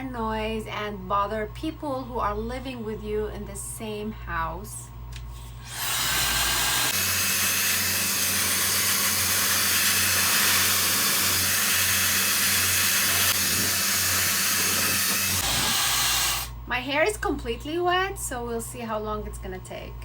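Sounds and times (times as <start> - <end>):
low motor hum: 5.4 - 17.6
hair dryer rush of air: 5.6 - 16.6.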